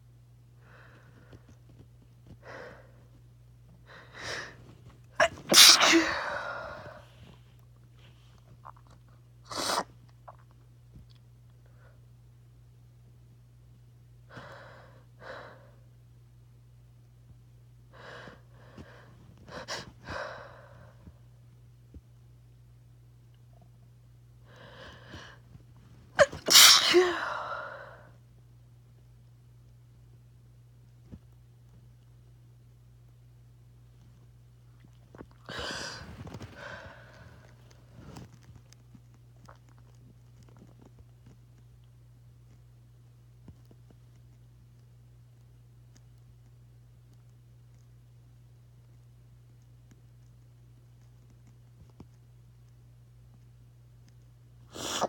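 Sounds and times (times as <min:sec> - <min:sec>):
person sneezing: 0:05.2 - 0:07.0, 0:09.5 - 0:09.9, 0:26.2 - 0:27.8, 0:54.7 - 0:55.0
person breathing: 0:35.5 - 0:37.4.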